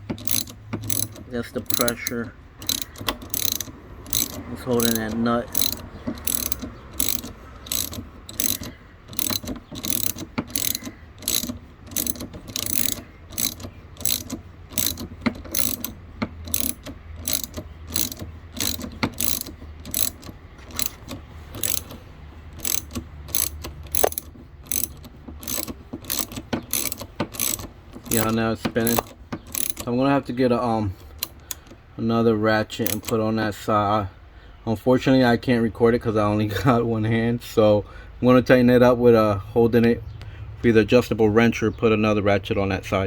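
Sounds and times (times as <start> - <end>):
socket ratchet clicking: 0.0 - 29.9, 31.0 - 31.9, 32.8 - 33.2.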